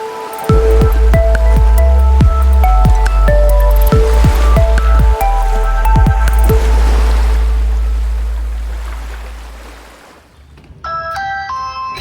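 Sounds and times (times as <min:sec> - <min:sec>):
heavy bass: 0:00.5 - 0:09.5.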